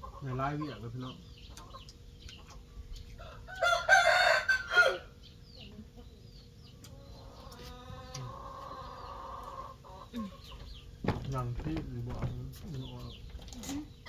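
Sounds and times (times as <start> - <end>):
small birds chirping: 0.0 - 14.0
rooster crowing: 3.2 - 5.2.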